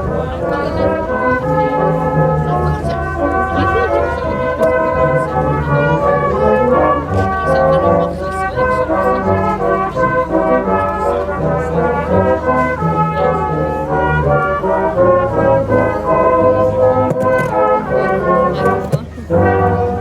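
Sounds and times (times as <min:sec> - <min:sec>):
brass band playing: 0:00.0 - 0:20.0.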